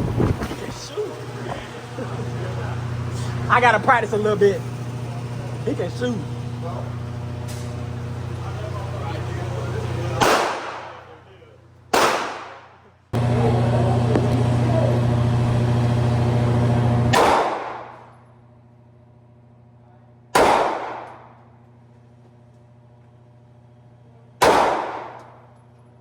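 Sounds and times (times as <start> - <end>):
loud steady hum: 0.0 - 26.0
gunshots echoing indoors: 10.2 - 11.0, 11.9 - 12.7, 17.1 - 18.0, 20.4 - 21.3, 24.4 - 25.4.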